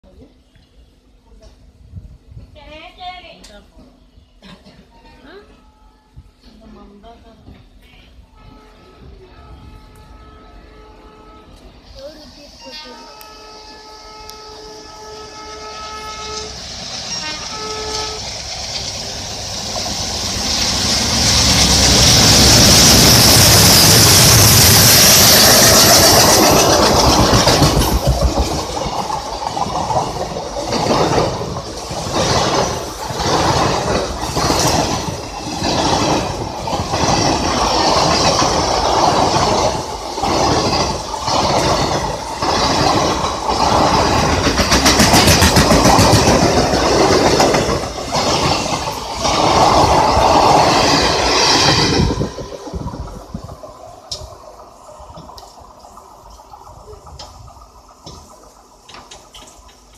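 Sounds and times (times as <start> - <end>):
diesel locomotive engine noise: 0.0 - 59.9
train wheels clacking over rail joints: 16.1 - 59.9.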